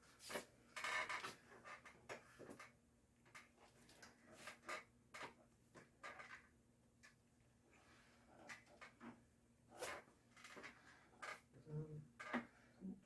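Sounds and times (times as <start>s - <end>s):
faint clicks and rustles: 0.1s - 12.8s.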